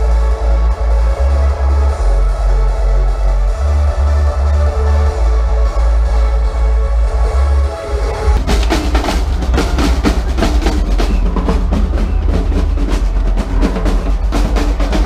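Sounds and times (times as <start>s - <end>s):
electronic dance music: 0.0s - 15.0s
rapid rolling drum hits: 8.4s - 15.0s.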